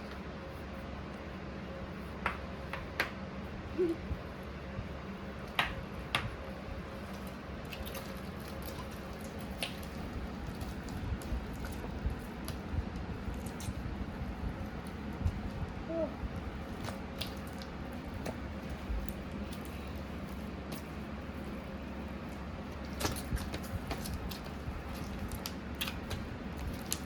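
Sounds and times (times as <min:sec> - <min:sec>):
low room hum: 0:00.0 - 0:27.0
slime squelching by hand: 0:06.6 - 0:27.0.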